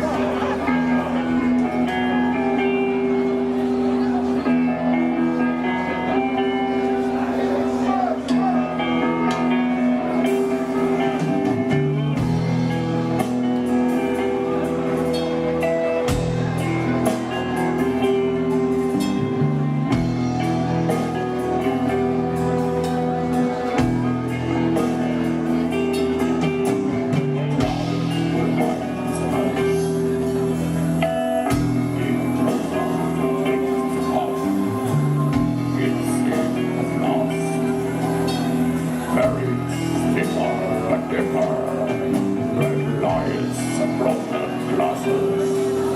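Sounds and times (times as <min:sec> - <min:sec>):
doom metal band playing: 0:00.0 - 0:45.9
drum and cymbal hits: 0:23.8 - 0:34.0.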